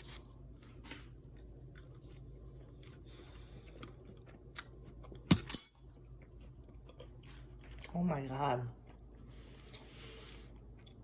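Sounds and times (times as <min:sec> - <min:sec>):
person chewing: 0:00.0 - 0:08.0, 0:08.8 - 0:11.0.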